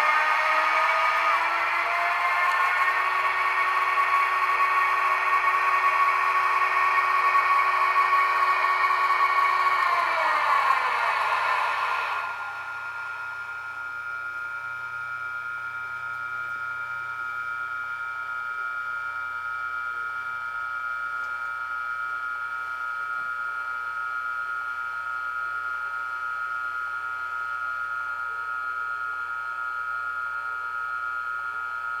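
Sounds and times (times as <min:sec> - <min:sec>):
steady high electronic tone: 0:00.0 - 0:14.3.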